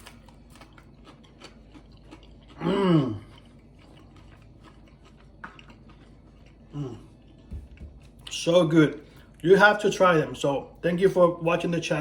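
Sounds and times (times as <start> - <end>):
person chewing crunchy food: 0.0 - 8.5
person humming mmm: 2.6 - 3.4, 6.7 - 7.2.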